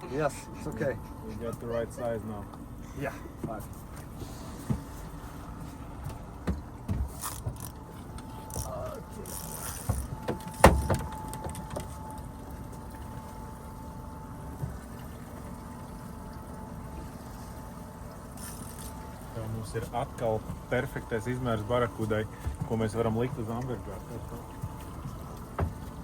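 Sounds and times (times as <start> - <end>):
thin steady tone: 0.0 - 3.6, 7.9 - 26.0
knocks and thumps on a boat: 2.4 - 12.8, 19.0 - 26.0.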